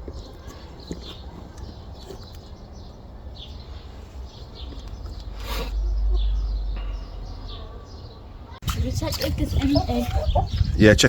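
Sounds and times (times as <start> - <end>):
small birds chirping: 0.0 - 11.0
low rumble: 5.2 - 7.6.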